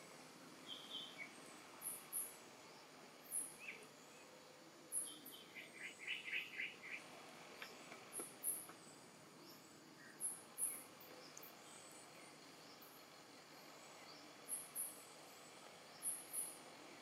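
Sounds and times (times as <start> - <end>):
faint bird chirps: 0.0 - 17.0
faint steady hiss: 0.0 - 17.0
high-pitched insect chirping: 16.0 - 16.6.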